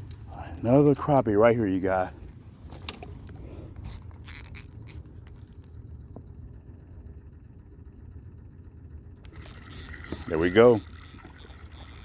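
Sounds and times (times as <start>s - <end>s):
low steady rumble: 0.0s - 12.0s
sharp clicks and scrapes: 2.7s - 5.8s.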